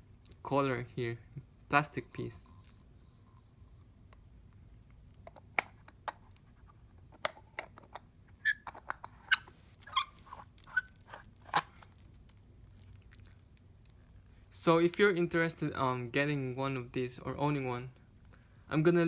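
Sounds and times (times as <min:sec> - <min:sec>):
short squeak: 0:08.4 - 0:11.0.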